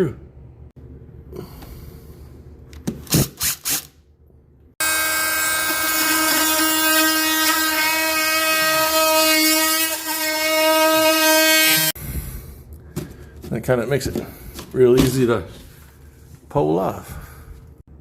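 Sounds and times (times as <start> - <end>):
cordless drill whine: 4.8 - 12.0.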